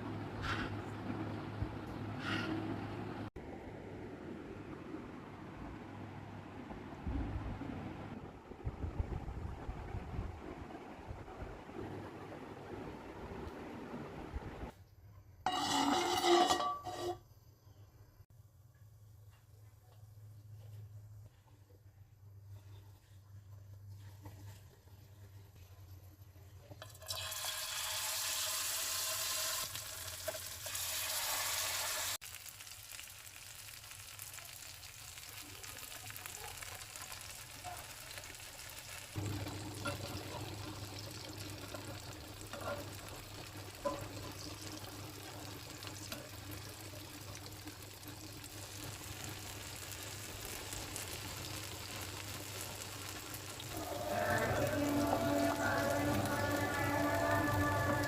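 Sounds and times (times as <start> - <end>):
fritters deep-frying in oil: 22.6 - 58.0.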